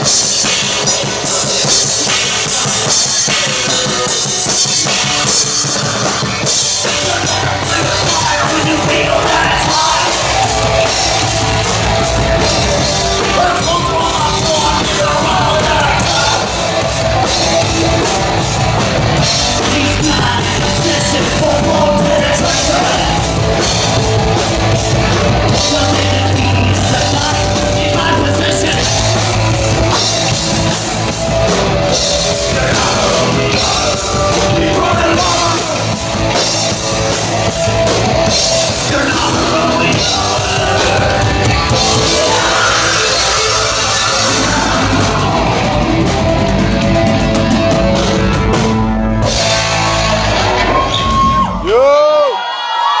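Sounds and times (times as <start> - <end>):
bass guitar: 0.0 - 52.3
drum kit: 0.0 - 52.4
distorted guitars: 0.0 - 53.0
shouted vocals: 6.8 - 29.4, 38.2 - 46.6, 48.5 - 53.0.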